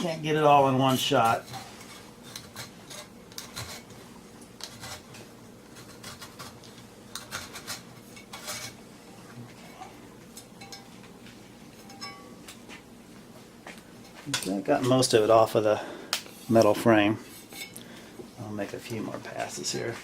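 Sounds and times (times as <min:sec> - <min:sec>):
knife scraping metal frame: 0:01.1 - 0:04.0, 0:04.6 - 0:08.8.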